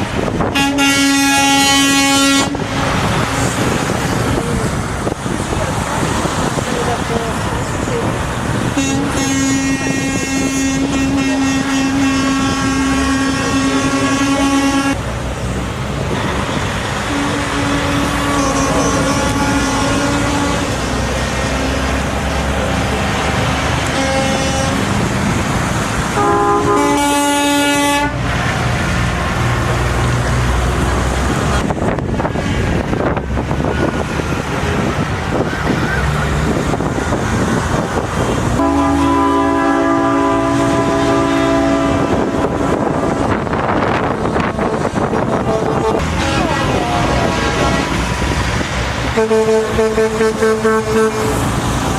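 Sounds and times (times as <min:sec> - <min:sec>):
truck engines rumbling: 0:00.0 - 0:51.9
truck air horns honking: 0:00.4 - 0:04.4, 0:08.6 - 0:15.1, 0:16.9 - 0:22.2, 0:23.0 - 0:25.4, 0:26.0 - 0:28.4, 0:38.2 - 0:51.7
chord horn: 0:00.5 - 0:03.2, 0:08.8 - 0:15.0, 0:17.1 - 0:21.0, 0:23.9 - 0:24.9, 0:26.2 - 0:28.2, 0:38.6 - 0:43.3, 0:44.6 - 0:48.2, 0:49.1 - 0:51.4.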